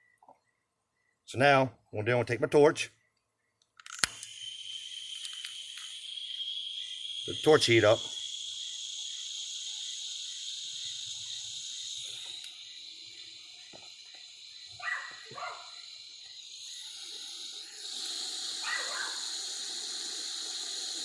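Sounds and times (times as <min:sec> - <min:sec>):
crickets chirring: 0:00.0 - 0:21.0
heat torch hissing: 0:03.9 - 0:21.0
dog barking: 0:14.8 - 0:15.8, 0:18.6 - 0:19.2.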